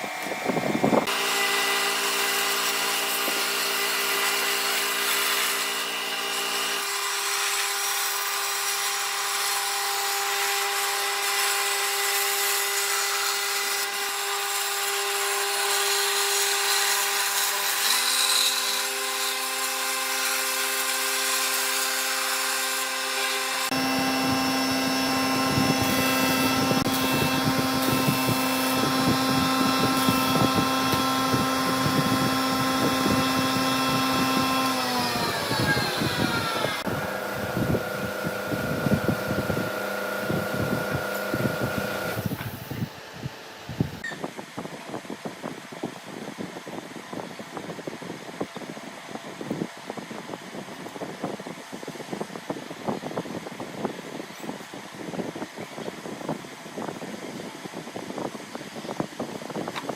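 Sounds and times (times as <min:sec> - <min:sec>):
power tools running on wood: 0:00.1 - 0:42.8.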